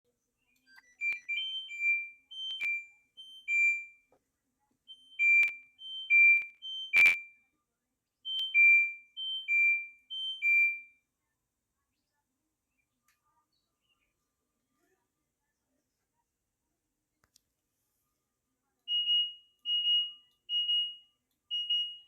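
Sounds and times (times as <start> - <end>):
washing machine two-note beeps: 0.8 - 4.0, 4.9 - 7.4, 8.3 - 10.9, 18.9 - 22.0.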